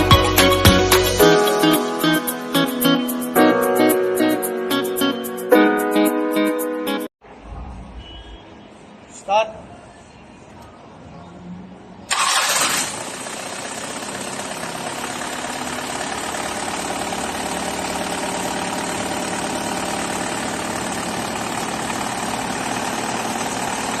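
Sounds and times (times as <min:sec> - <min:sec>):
diesel engine starting and idling: 0:12.1 - 0:24.0.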